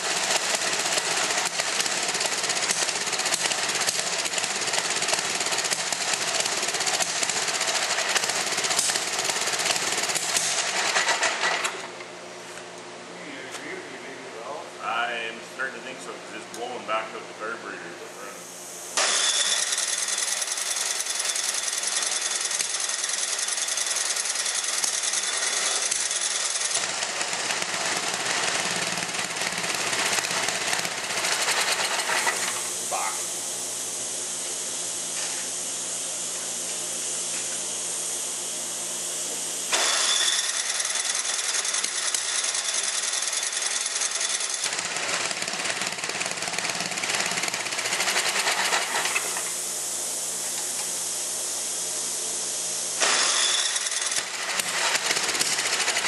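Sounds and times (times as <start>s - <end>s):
engine cranking and sputtering: 0.0s - 11.9s, 19.6s - 32.7s, 39.8s - 49.4s, 53.0s - 56.0s.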